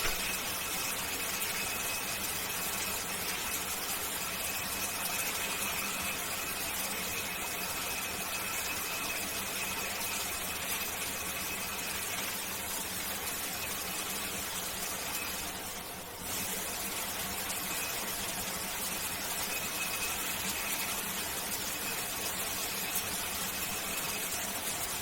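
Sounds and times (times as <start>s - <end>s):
shower spraying water: 0.0s - 2.8s, 12.0s - 25.0s.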